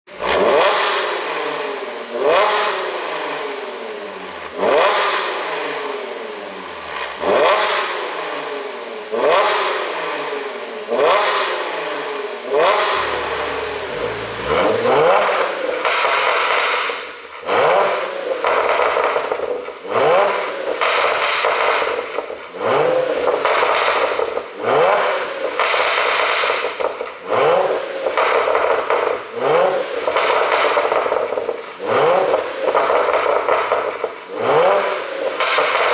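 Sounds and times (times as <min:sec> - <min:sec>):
exhaust popping and crackling: 0:00.1 - 0:00.8, 0:12.9 - 0:15.4
car engine revving: 0:00.1 - 0:01.4, 0:12.6 - 0:15.6.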